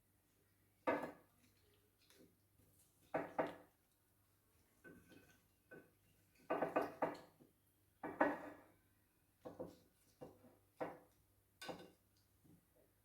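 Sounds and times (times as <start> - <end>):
household objects knocking and clattering: 3.1 - 3.7, 6.4 - 7.3, 8.0 - 8.7.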